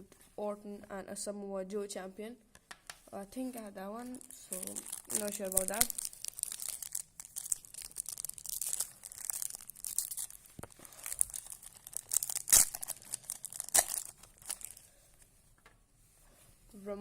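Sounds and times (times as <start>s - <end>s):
card pack wrapper tearing: 4.2s - 14.8s.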